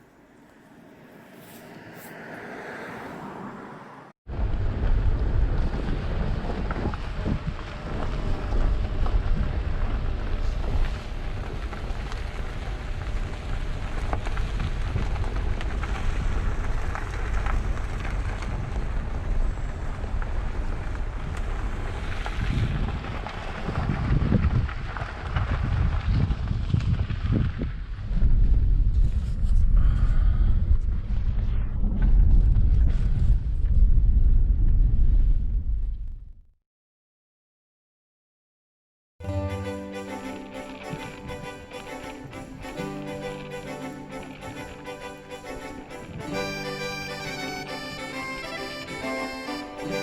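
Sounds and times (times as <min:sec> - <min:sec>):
wind buffeting microphone: 0:04.3 - 0:36.3.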